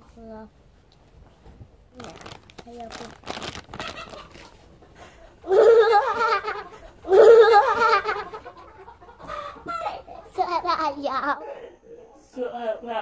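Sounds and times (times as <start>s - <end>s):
girl cackling: 5.4s - 8.5s.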